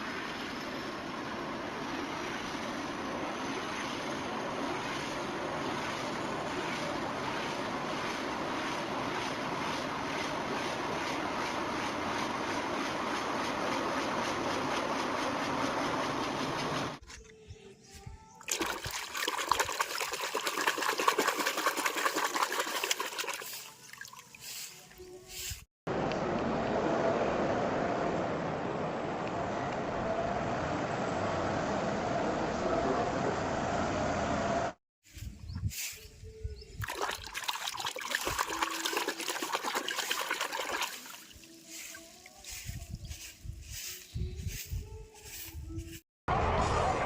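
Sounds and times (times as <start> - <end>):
water splashing and trickling: 0.0 - 14.4, 18.4 - 25.7, 36.8 - 44.6
noisy rumble: 25.9 - 34.8, 46.3 - 47.0.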